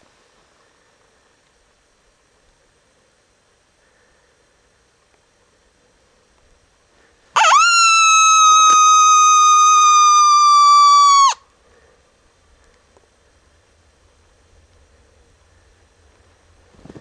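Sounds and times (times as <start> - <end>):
coyote howler call: 7.4 - 11.4.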